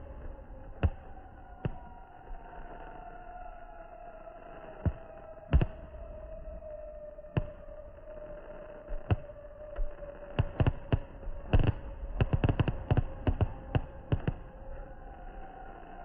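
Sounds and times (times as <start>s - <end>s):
fireworks bangs and cracks: 10.3s - 14.4s.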